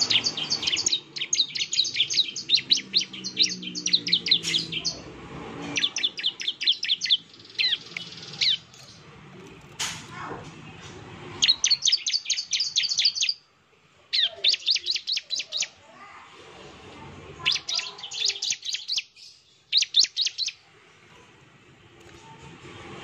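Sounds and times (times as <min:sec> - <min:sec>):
bird singing rapid high notes: 0:00.0 - 0:09.0, 0:11.4 - 0:13.5, 0:14.1 - 0:15.8, 0:17.4 - 0:20.6.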